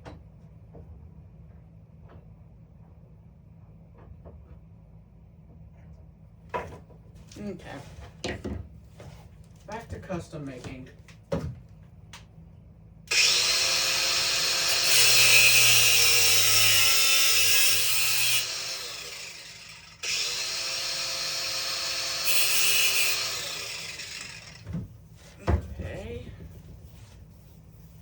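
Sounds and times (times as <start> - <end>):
power tool grinding metal: 13.1 - 24.6.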